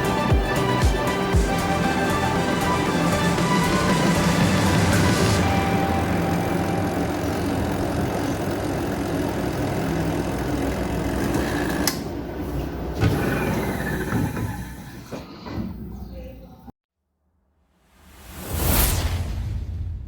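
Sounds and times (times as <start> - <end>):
spin dryer mechanical hum: 0.1 - 15.4.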